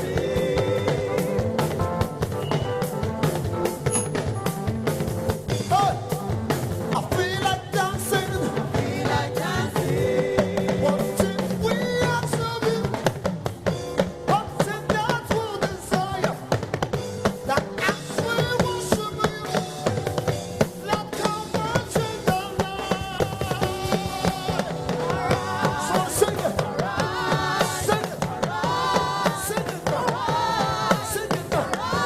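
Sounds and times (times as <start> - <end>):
drum kit beat: 0.0 - 32.0
gospel band music: 0.0 - 32.0
person singing: 20.8 - 32.0.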